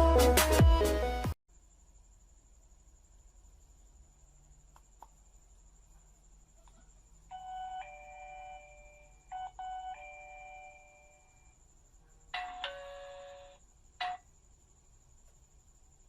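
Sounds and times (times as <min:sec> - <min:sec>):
two-note doorbell chime: 0:07.3 - 0:11.4.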